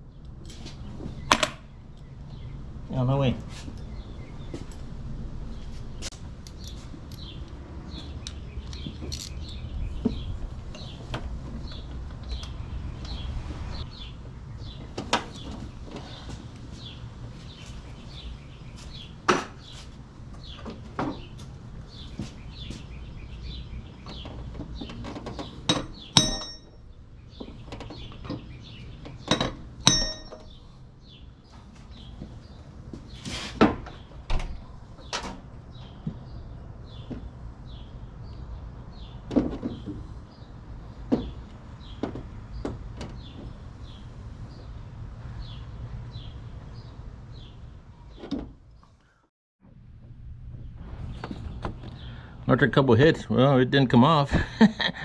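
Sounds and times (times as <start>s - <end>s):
hammer striking metal: 19.3s - 19.6s, 25.7s - 26.8s, 29.8s - 30.5s.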